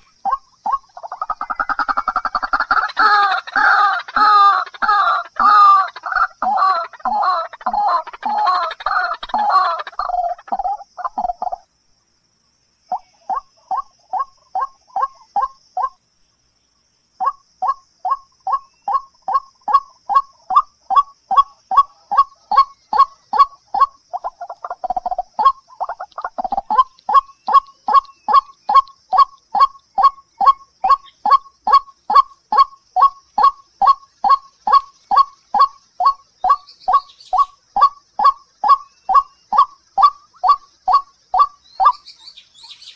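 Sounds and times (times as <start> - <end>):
longer lower bird call: 17.2 - 42.9.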